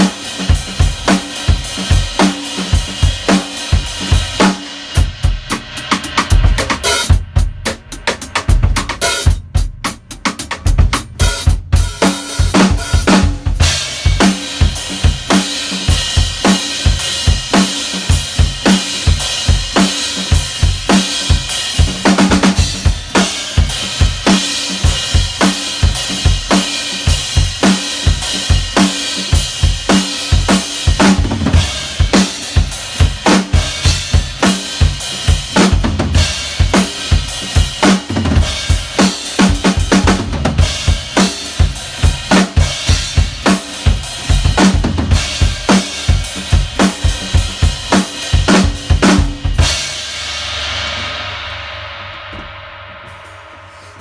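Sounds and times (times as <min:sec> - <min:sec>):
drum kit playing a beat: 0:00.0 - 0:54.0
ringing cymbals: 0:50.1 - 0:54.0.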